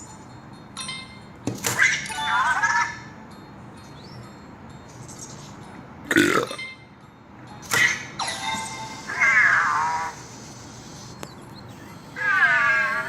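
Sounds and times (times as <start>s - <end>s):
toy robot electronic voice noises: 7.7s - 11.1s, 11.7s - 13.0s.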